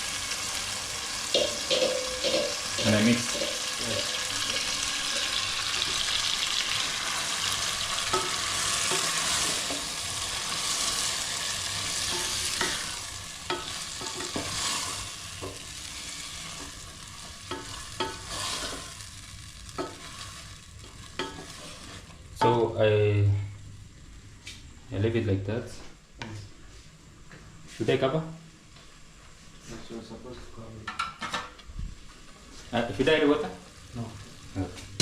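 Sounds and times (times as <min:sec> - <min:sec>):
food sizzling in a pot: 0:00.0 - 0:23.1, 0:31.9 - 0:35.0
spoon knocking against pot: 0:01.3 - 0:02.6.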